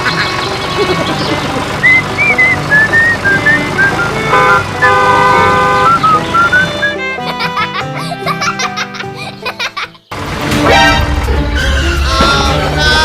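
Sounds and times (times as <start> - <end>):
whistle-like melody: 1.8 - 5.0, 5.7 - 7.1.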